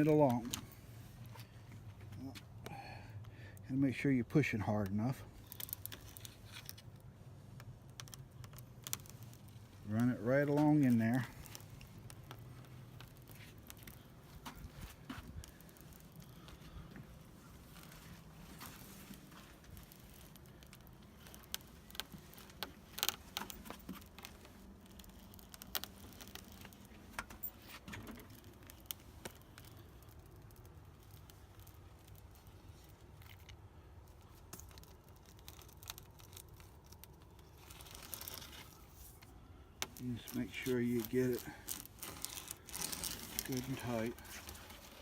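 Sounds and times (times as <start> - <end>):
roller pressing screen mesh: 39.8 - 45.0.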